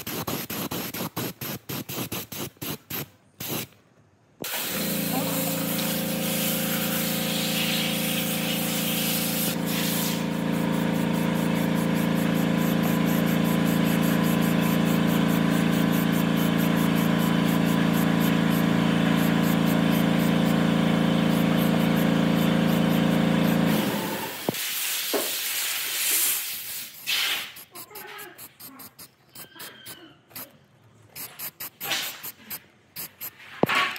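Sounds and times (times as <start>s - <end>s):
workshop machine humming: 4.4s - 25.3s.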